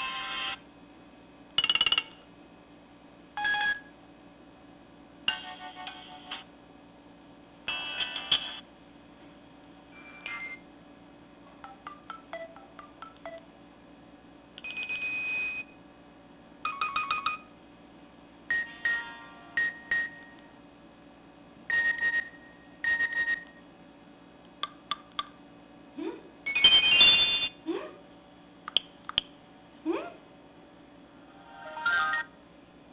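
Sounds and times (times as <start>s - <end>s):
phone ringtones and alert tones: 1.6s - 2.2s, 11.5s - 13.4s, 16.7s - 17.5s, 18.5s - 20.3s, 26.5s - 27.6s, 31.4s - 32.3s.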